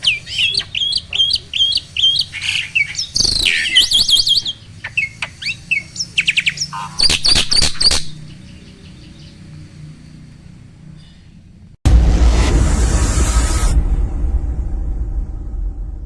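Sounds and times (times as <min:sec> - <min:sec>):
starling singing: 0:00.0 - 0:10.1.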